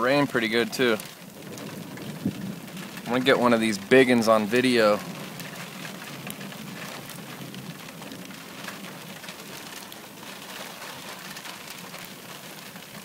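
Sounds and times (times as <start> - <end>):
rain on a car: 0.0 - 13.0.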